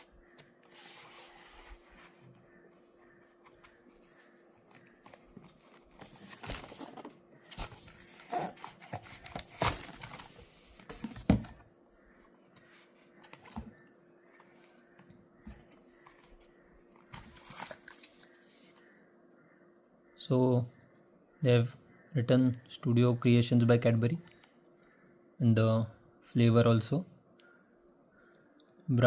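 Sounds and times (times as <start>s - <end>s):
cardboard box rustling and crinkling: 5.0s - 11.6s.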